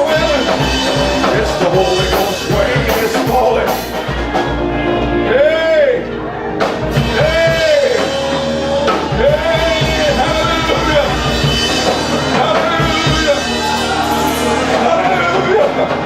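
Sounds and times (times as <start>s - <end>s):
rock band playing: 0.0s - 16.0s.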